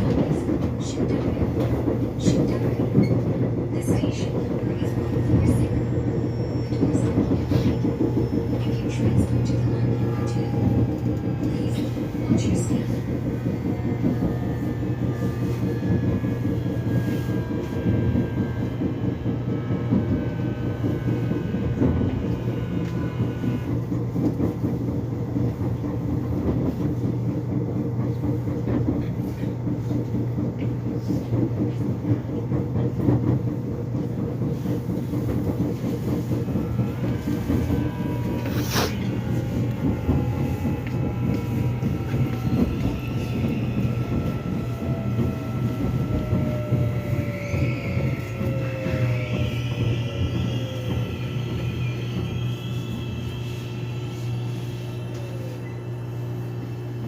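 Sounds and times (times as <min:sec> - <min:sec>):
subway train rumbling on rails: 0:00.0 - 0:57.0
train motor whine: 0:00.0 - 0:57.0
high squeal: 0:36.3 - 0:56.8.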